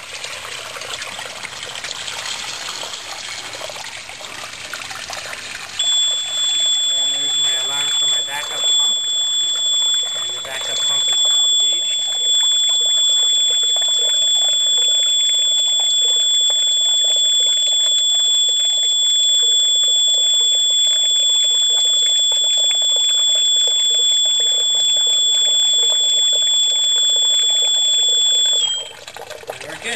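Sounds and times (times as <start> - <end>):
water running and splashing: 0.0 - 29.9
high-pitched alarm tone: 5.8 - 29.0.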